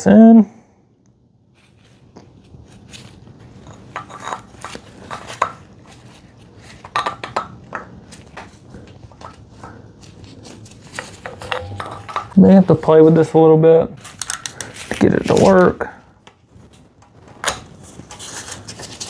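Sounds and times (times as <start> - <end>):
metal tool clicks and clinks: 11.3 - 12.4, 14.1 - 14.7
ringing metal knocks: 11.4 - 12.4.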